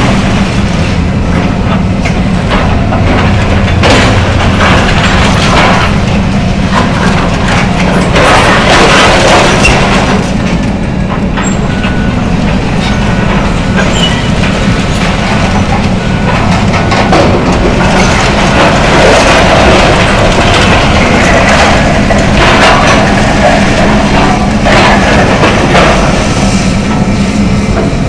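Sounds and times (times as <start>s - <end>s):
debris clanking and crunching: 0.0s - 28.0s
excavator running: 0.0s - 28.0s.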